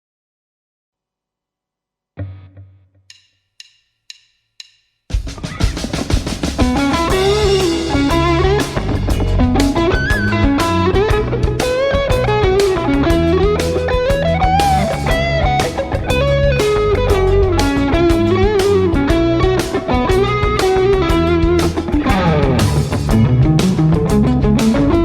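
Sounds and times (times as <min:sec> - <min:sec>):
electric guitar lead melody: 0:02.2 - 0:02.9, 0:06.4 - 0:25.0
backing track drums: 0:03.1 - 0:25.0
backing track bass: 0:05.2 - 0:25.0.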